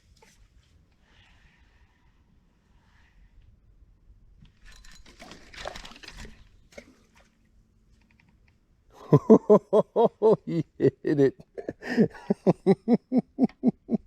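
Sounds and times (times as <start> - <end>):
man laughing: 9.0 - 14.0.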